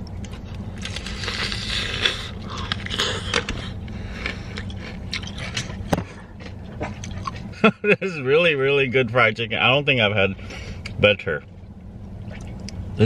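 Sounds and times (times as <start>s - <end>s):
steady low hum: 0.0s - 13.0s
chewing crispy fried chicken: 0.2s - 7.5s.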